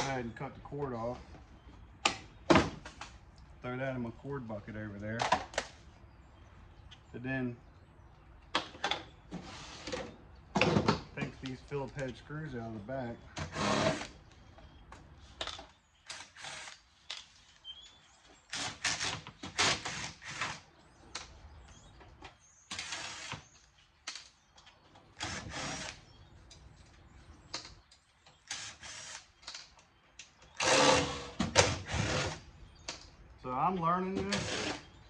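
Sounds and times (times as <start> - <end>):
power drill backing out screws: 13.4 - 14.1, 30.6 - 32.4, 34.2 - 34.9.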